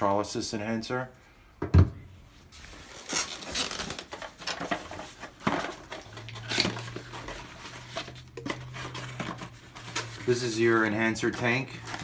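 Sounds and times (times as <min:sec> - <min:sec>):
packaging rustling: 0:02.6 - 0:12.0.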